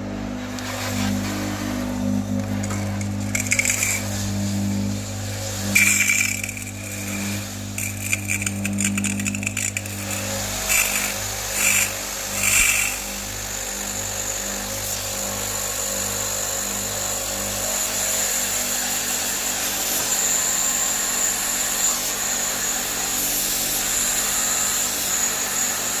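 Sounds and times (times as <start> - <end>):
pressure washer motor humming: 0.0 - 19.0
water jet hissing: 0.8 - 13.2.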